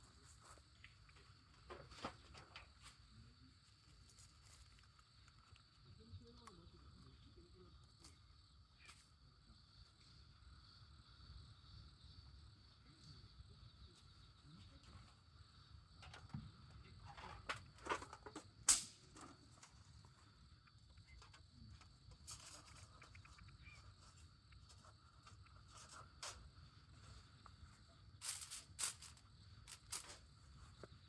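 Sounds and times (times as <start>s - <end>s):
insects chirping: 0.0s - 31.0s
sharp clicks and cracks: 18.0s - 19.4s.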